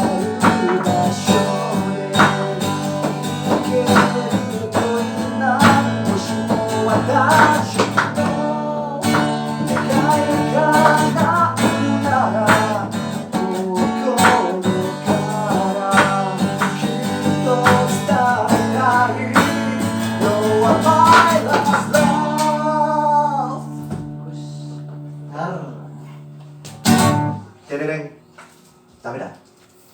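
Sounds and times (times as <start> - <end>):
drum hits: 0.0 - 8.4, 9.1 - 22.4
person singing: 0.0 - 26.3
strummed guitar chords: 0.0 - 27.6.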